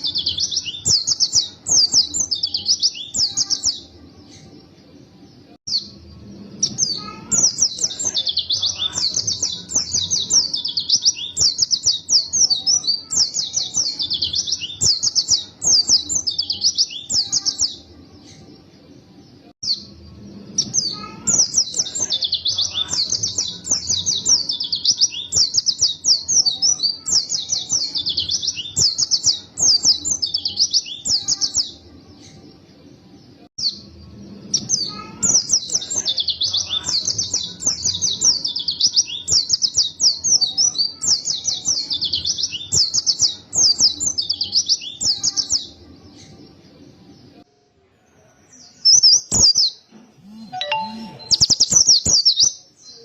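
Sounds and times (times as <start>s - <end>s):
bird twittering song: 0.0s - 32.6s, 48.6s - 53.0s.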